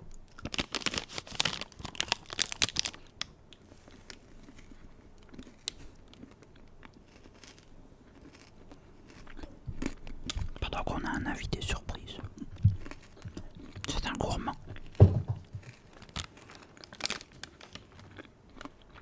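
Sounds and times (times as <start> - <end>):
plastic wrapper crinkling: 0.3 - 3.3, 15.0 - 18.7.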